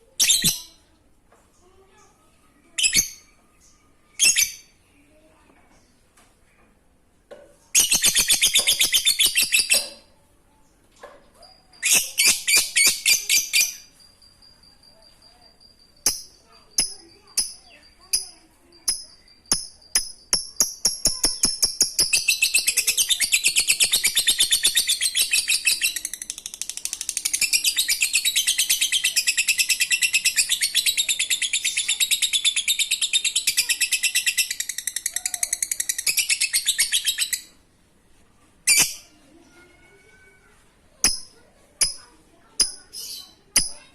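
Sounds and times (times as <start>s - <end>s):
lovebird rattling chatter: 7.8s - 10.0s, 11.6s - 37.5s.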